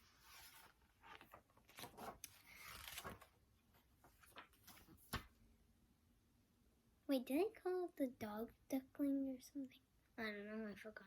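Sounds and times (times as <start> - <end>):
faint rustling and handling noise: 0.0 - 5.5.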